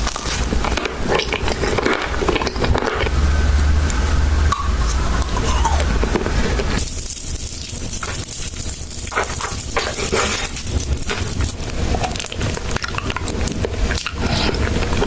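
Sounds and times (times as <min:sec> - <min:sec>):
crisp crunching while chewing: 0:00.0 - 0:03.1, 0:06.8 - 0:15.0
low rumble: 0:03.0 - 0:08.0.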